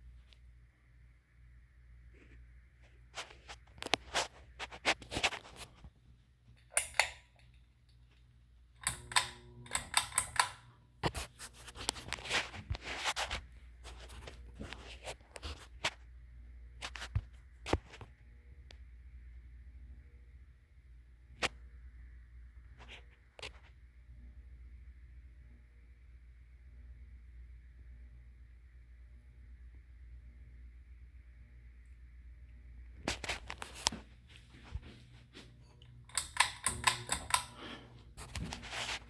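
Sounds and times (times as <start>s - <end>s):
faint low hum: 0.0s - 39.0s
objects being handled: 3.1s - 16.0s, 33.0s - 39.0s.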